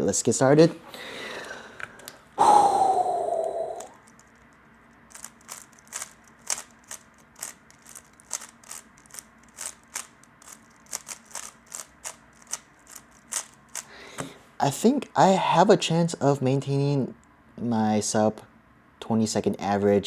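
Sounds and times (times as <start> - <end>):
plastic puzzle cube clicks: 5.1 - 13.9.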